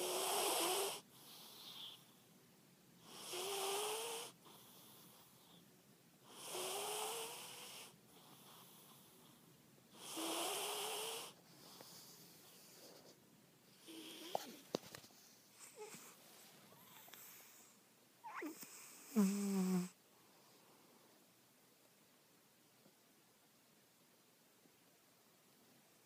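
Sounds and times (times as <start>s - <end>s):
cat snoring with whistling tone: 0.0s - 2.0s, 3.0s - 5.5s, 6.3s - 9.1s, 10.0s - 11.4s, 18.2s - 19.9s
cat breathing softly: 11.2s - 13.1s.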